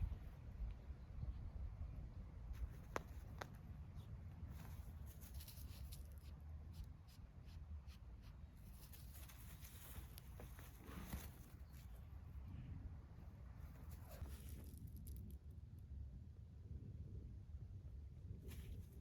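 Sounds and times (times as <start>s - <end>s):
low steady hum: 0.0s - 19.0s
cat playing with wool: 2.6s - 12.2s.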